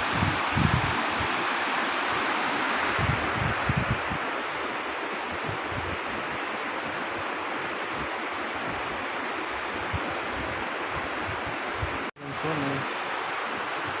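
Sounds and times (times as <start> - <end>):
flowing river water: 0.0 - 14.0.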